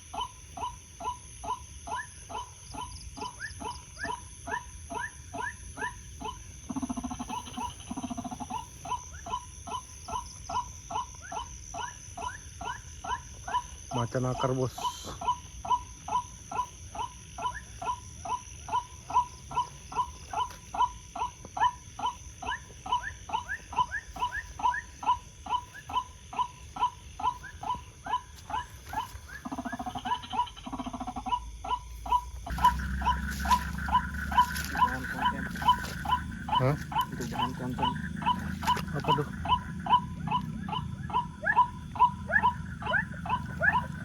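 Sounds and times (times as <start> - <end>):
waterhen calls: 32.1 - 44.0.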